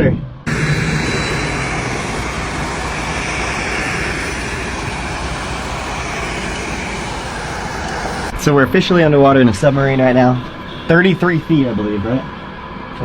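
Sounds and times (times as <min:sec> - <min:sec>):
steady rushing noise: 0:00.5 - 0:08.4.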